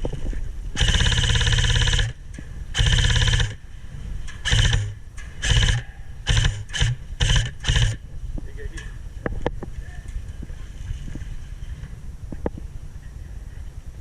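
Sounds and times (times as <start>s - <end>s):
electric gun firing bursts: 0.8s - 3.6s, 4.3s - 8.0s
gearbox whine: 0.8s - 3.6s, 4.4s - 8.0s.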